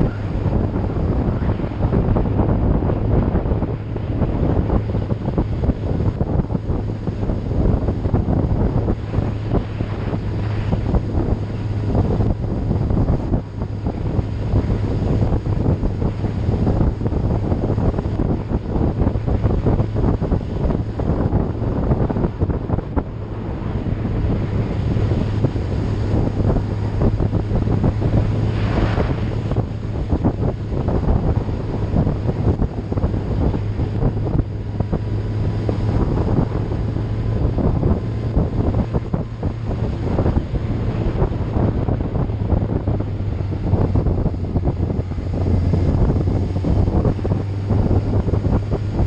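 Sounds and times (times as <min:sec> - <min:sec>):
vehicle drone: 0:00.0 - 0:49.0
wind buffeting microphone: 0:00.0 - 0:49.0.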